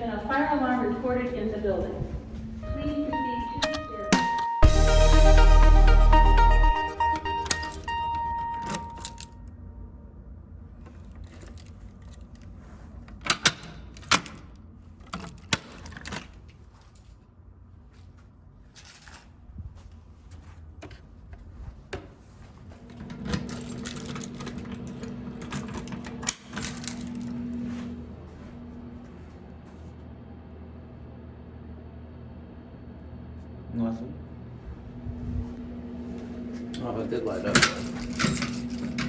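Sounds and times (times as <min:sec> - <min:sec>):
low steady hum: 0:00.0 - 0:12.5, 0:22.8 - 0:39.0.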